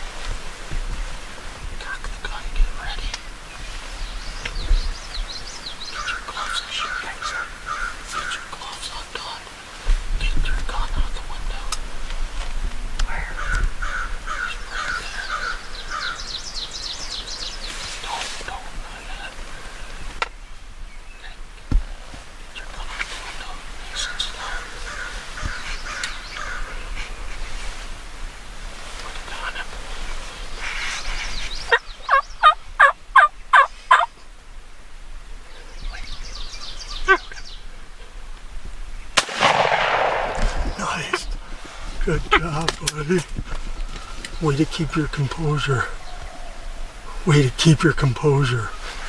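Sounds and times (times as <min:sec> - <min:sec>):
faint bird chirping: 0:01.0 - 0:09.6, 0:13.1 - 0:21.5, 0:29.1 - 0:38.2, 0:38.8 - 0:49.0
crow cawing: 0:06.0 - 0:08.5, 0:13.3 - 0:16.3, 0:24.0 - 0:26.7
turkey gobbling: 0:31.7 - 0:34.1.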